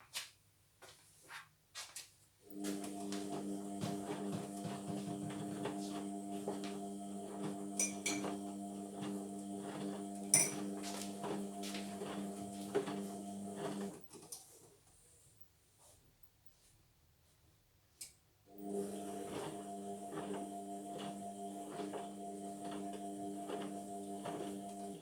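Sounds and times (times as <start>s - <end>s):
washing machine motor hum: 2.5s - 14.1s, 18.5s - 25.0s.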